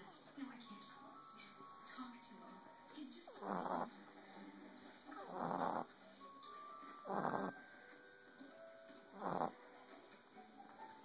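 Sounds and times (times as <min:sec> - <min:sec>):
puppy snoring: 0:01.4 - 0:02.3, 0:03.2 - 0:04.3, 0:05.1 - 0:06.0, 0:06.9 - 0:07.7, 0:09.0 - 0:10.4.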